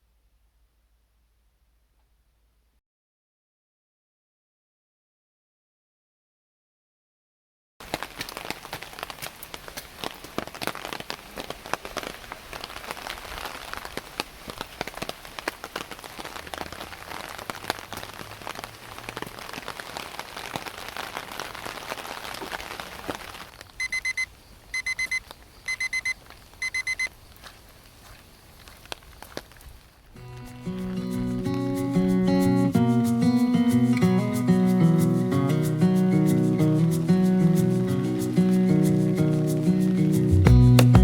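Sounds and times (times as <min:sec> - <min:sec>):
heavy rain pattering: 0:07.8 - 0:32.8, 0:35.0 - 0:41.0
alarm clock beeping: 0:23.8 - 0:27.1.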